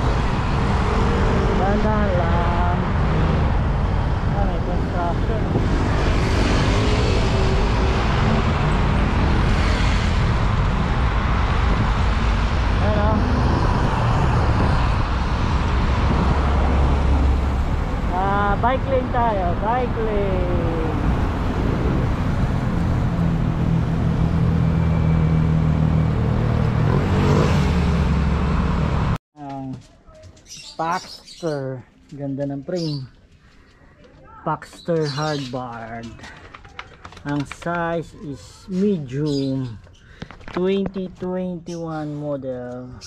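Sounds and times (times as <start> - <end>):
vehicle engine humming: 0.0 - 29.2
road traffic rumble: 0.0 - 43.0.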